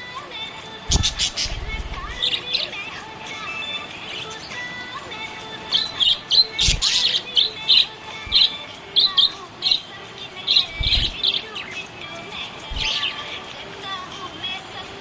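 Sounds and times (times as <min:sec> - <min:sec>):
low thumps: 0:00.9 - 0:02.2, 0:10.7 - 0:11.2
budgerigar chirping: 0:00.9 - 0:02.5, 0:05.7 - 0:09.4, 0:10.6 - 0:11.5, 0:12.7 - 0:13.2.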